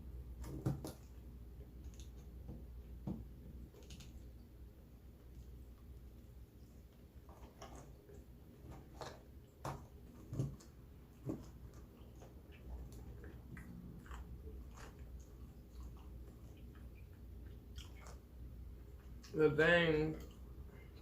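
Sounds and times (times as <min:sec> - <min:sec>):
person chewing: 0:05.2 - 0:19.4.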